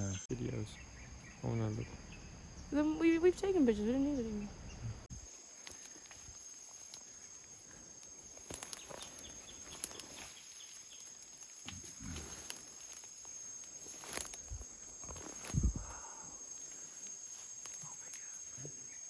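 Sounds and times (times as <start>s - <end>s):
insects chirring: 0.0s - 19.0s
clicks and rustles: 8.4s - 15.5s.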